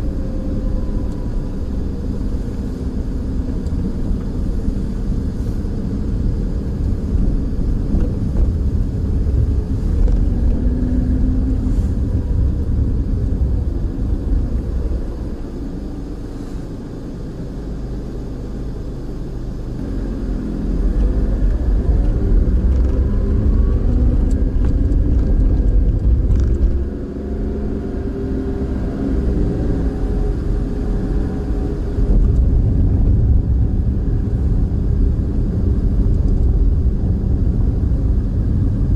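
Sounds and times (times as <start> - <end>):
car engine accelerating: 0.0 - 38.9
road rumble: 0.0 - 38.9.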